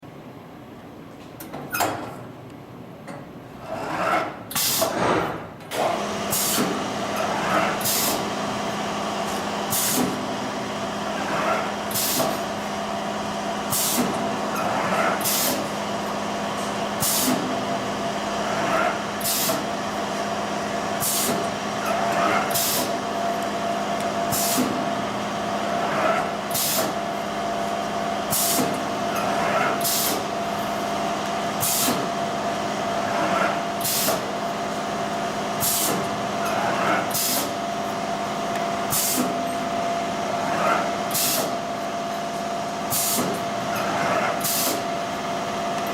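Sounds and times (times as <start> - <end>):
short hiss of cutting machine: 4.5 - 5.1, 7.4 - 8.2, 9.7 - 10.2, 11.9 - 12.4, 15.2 - 15.6, 17.0 - 17.5, 19.2 - 19.6, 21.0 - 21.4, 22.5 - 22.9, 24.3 - 24.8, 26.5 - 27.0, 29.8 - 30.2, 31.6 - 32.1, 33.5 - 34.2, 37.0 - 37.6, 38.9 - 39.3, 41.1 - 41.6, 42.9 - 43.4, 44.4 - 44.9
machine hum: 5.5 - 45.9.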